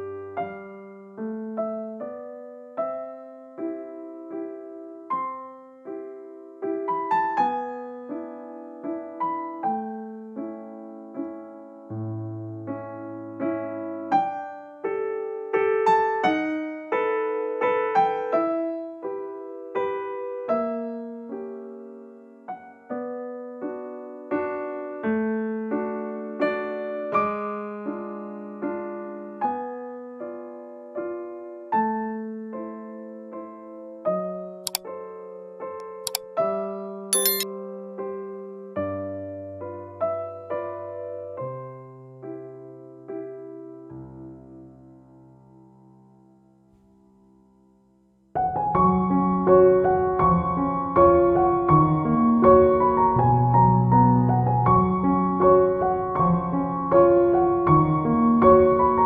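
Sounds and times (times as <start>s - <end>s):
gentle piano music: 0.0s - 32.9s, 48.4s - 59.0s.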